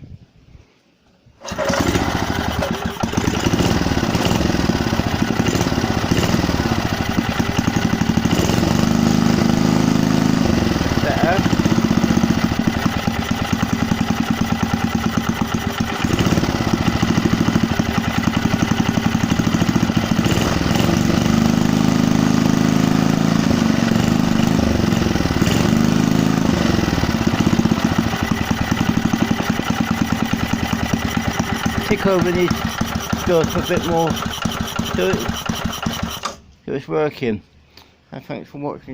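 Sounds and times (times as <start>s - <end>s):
petrol engine running: 1.4s - 36.4s.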